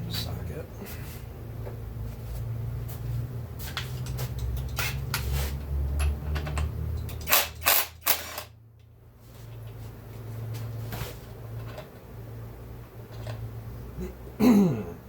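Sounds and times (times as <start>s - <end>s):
steady low hum: 0.0s - 7.3s
metal parts clinking: 6.4s - 8.5s.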